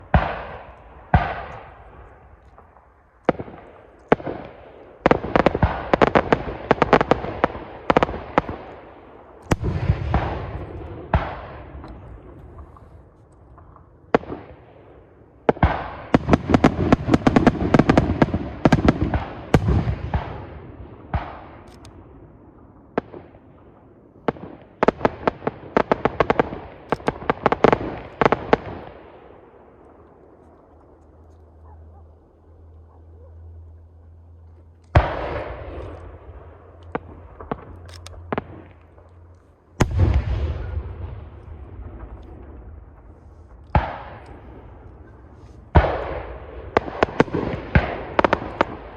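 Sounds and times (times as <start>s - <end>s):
fireworks booms: 0.0s - 30.9s, 34.9s - 48.9s
fireworks crackling: 34.9s - 48.9s.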